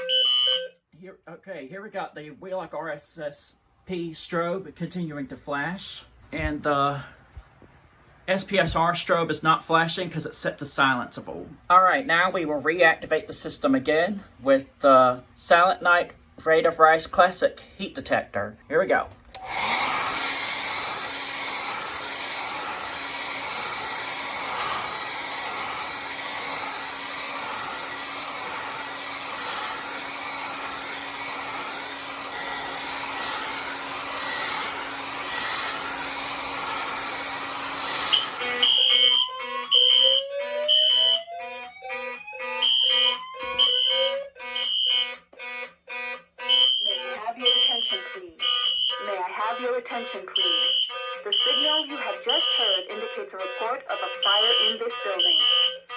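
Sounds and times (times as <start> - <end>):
fire alarm horn pulsing: 0.0 - 0.8, 19.4 - 55.9
hot-air blower running: 19.3 - 39.8.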